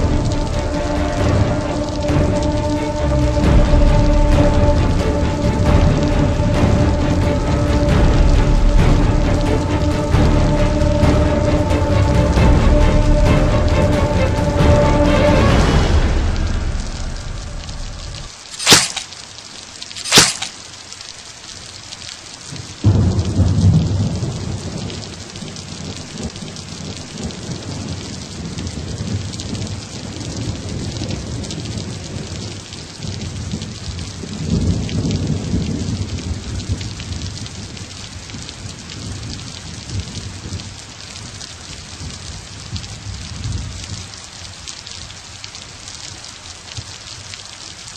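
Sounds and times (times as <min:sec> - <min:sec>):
steady rain: 0:00.0 - 0:47.9
low thunder rumble: 0:22.8 - 0:40.7.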